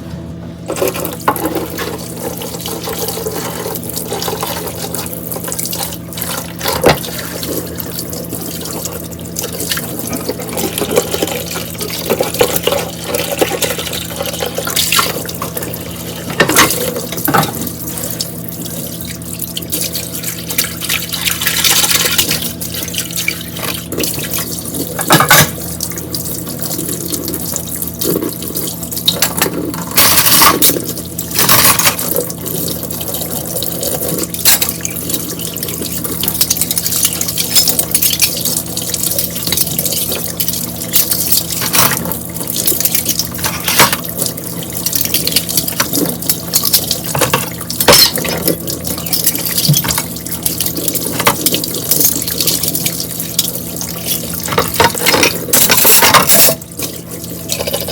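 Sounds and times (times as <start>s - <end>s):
dishes splashing and knocking: 0.7s - 57.9s
tap running into sink: 14.4s - 17.8s, 24.9s - 25.9s, 44.8s - 52.8s, 54.4s - 57.9s.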